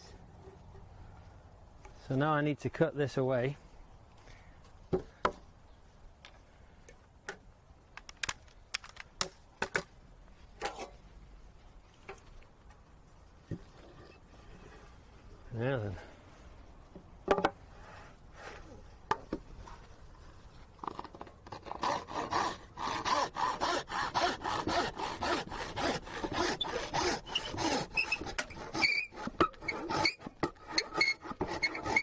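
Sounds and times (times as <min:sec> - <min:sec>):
hand saw cutting wood: 0:21.4 - 0:32.0.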